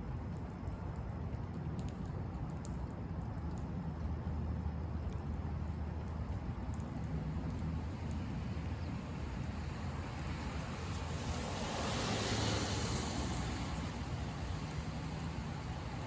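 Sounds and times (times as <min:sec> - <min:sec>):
car on wet road: 0:09.2 - 0:16.0.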